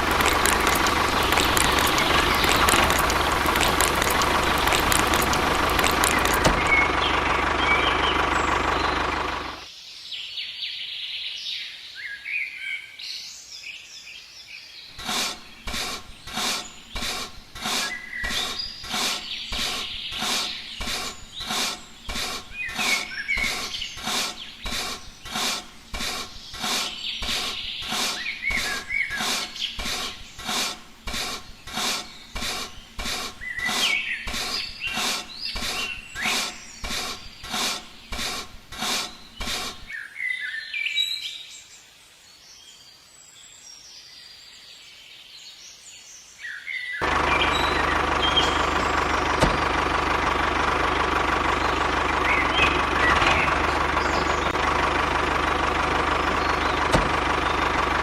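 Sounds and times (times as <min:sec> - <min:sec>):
rhythmic stroking noise: 0:00.0 - 0:06.7
small birds chirping: 0:00.0 - 0:12.3, 0:13.1 - 0:58.0.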